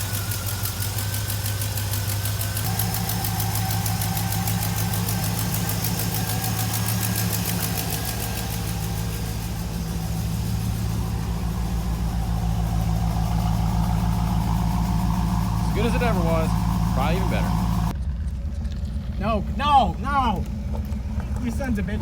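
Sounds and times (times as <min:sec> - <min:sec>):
car engine idling: 0:00.0 - 0:22.0.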